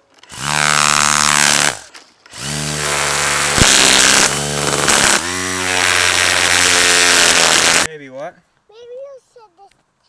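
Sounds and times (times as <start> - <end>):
string trimmer cutting weeds: 0.0 - 7.9.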